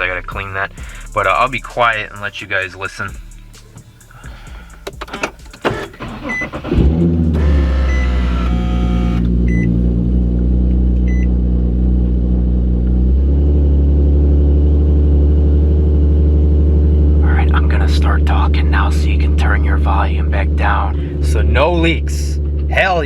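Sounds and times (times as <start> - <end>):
car engine idling: 0.0 - 23.0
starter motor cranking: 4.8 - 9.8
dashboard chime beeping: 7.5 - 9.8.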